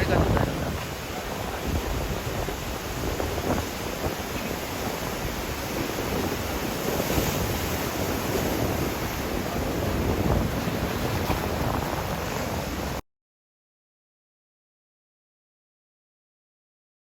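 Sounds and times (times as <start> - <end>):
ocean surf breaking: 0.0 - 13.0
wind buffeting microphone: 0.0 - 13.0.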